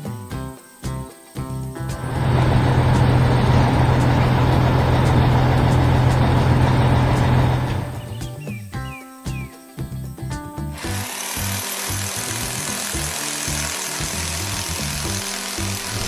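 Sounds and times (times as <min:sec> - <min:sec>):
music: 0:00.0 - 0:16.0
heavy engine rumble: 0:02.0 - 0:08.2.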